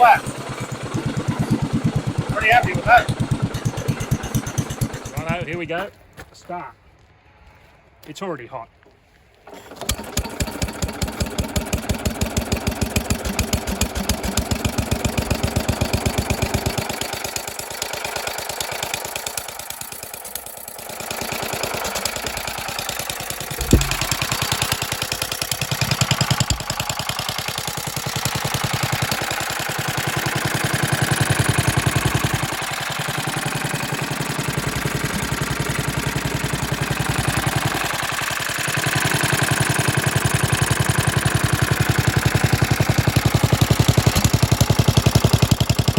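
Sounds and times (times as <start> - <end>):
stationary engine running: 0.0 - 5.7, 9.8 - 45.9
sharp engine knock: 0.1 - 5.7, 9.9 - 17.2, 20.8 - 33.6.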